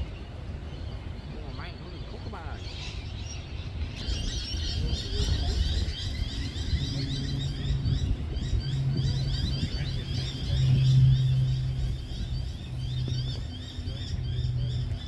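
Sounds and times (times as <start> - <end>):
birds chirping: 0.0 - 15.0
engine-like hum: 0.0 - 15.0
low rumble: 4.6 - 15.0.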